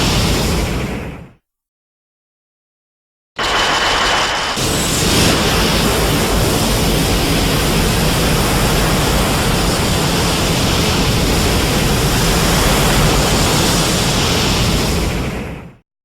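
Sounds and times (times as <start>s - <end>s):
energy beam rushing noise: 3.4s - 15.7s.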